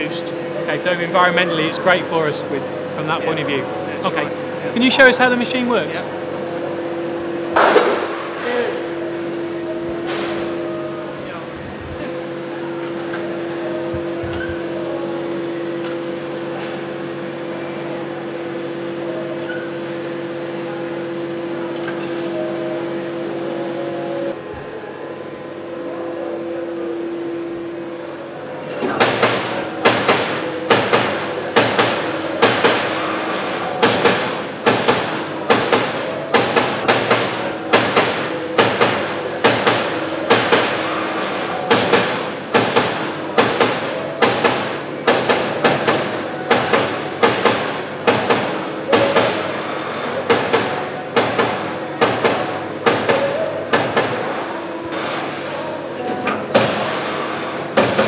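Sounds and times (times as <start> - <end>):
machine hum: 0.0 - 58.0
punch striking sheet metal: 29.0 - 33.0.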